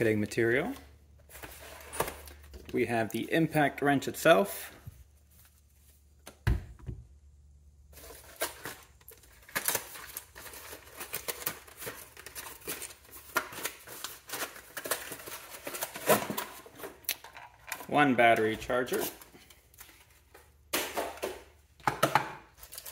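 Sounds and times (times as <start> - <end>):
packaging rustling and crinkling: 7.9 - 21.3, 22.5 - 22.9.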